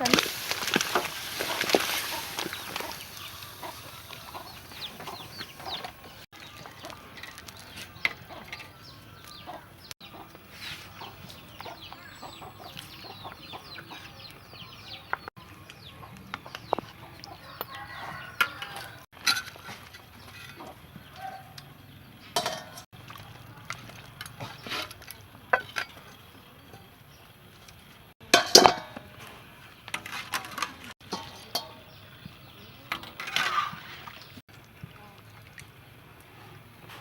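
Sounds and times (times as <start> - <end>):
chickens clucking: 0.0 - 22.9.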